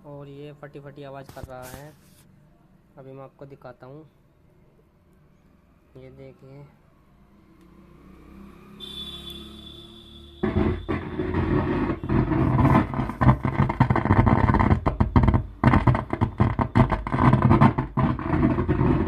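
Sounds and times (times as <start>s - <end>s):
distorted audio from loudspeaker: 10.4s - 19.0s.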